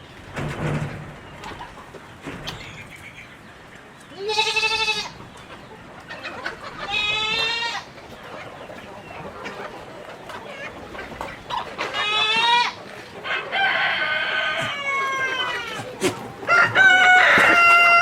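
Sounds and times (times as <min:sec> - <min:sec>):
farm fowl calls and clicks: 0:00.0 - 0:18.0
goat bleating: 0:04.1 - 0:05.2, 0:06.8 - 0:07.9, 0:11.9 - 0:12.8.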